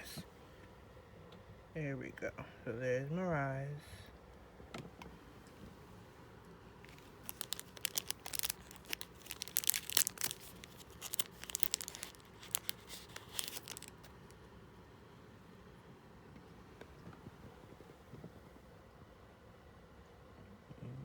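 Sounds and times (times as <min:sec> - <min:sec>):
packaging crinkling and tearing: 0:06.9 - 0:14.4.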